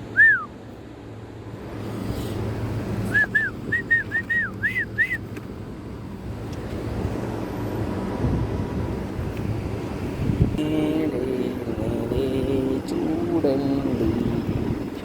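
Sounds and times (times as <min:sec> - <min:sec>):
high chirping whistles: 0:03.1 - 0:05.2.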